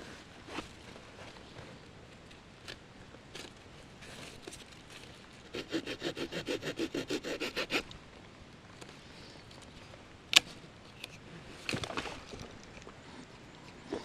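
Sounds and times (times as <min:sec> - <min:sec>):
saw blade rasping on branch: 0:05.5 - 0:07.9.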